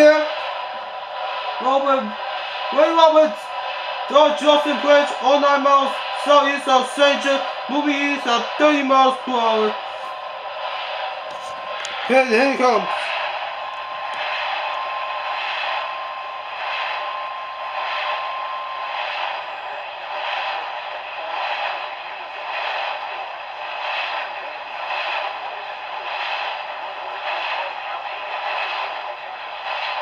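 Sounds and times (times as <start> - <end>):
pulsing radio static hiss: 0.0 - 30.0
faint steady tone: 12.4 - 21.0.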